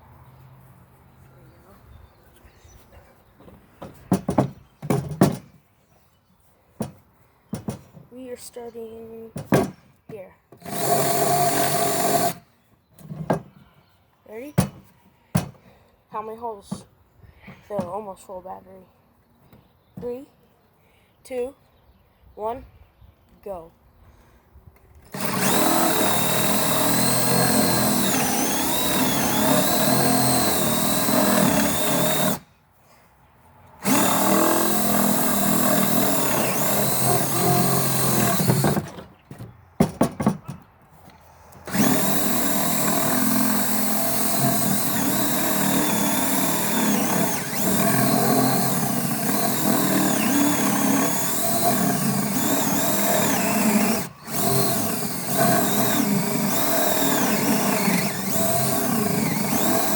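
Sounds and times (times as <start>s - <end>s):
cordless drill boring wood: 10.6s - 12.4s, 25.1s - 32.4s, 33.8s - 39.0s, 41.6s - 59.9s
sharp knocks: 38.0s - 40.6s.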